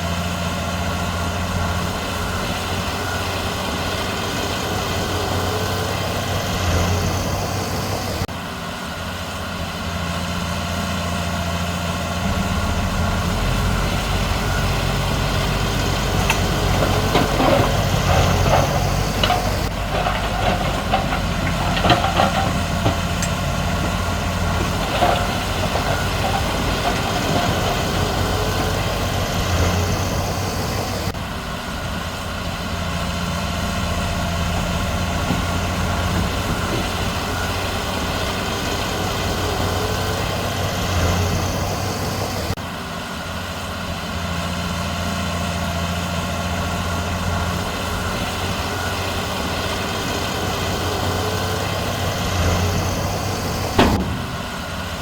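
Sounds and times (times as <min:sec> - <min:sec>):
bulldozer and dump trucks running: 0:00.0 - 0:55.0
metal clanks and rattles: 0:12.1 - 0:28.1, 0:53.8 - 0:55.0.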